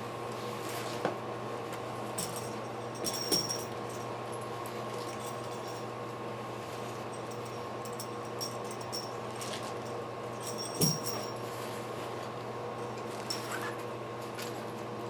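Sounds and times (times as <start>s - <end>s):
steady electrical hum: 0.0s - 15.0s
metallic clinks and rattles: 2.2s - 4.1s, 7.2s - 11.4s.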